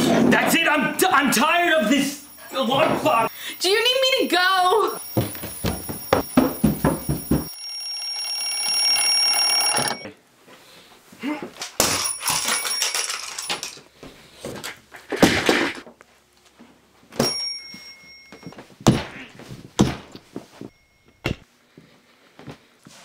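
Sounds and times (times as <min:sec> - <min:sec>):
alarm clock being smashed: 0:04.8 - 0:10.0, 0:11.8 - 0:13.8.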